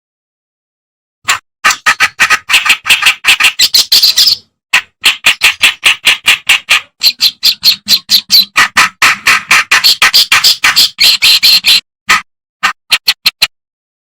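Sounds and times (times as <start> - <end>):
warbler singing scratchy chatter: 1.6 - 8.6, 9.5 - 11.8.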